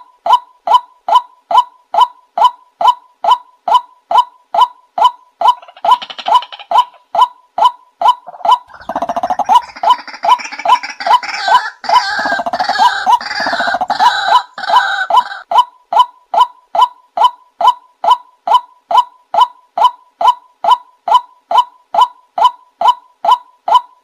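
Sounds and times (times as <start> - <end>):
bird repeating wak calls: 1.1 - 15.5
harsh croaking bird chatter: 5.4 - 7.1, 8.2 - 15.4.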